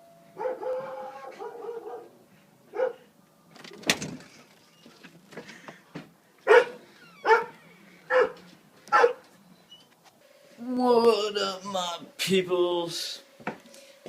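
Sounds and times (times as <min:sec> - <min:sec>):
dog barking: 0:00.4 - 0:03.1, 0:06.4 - 0:09.2.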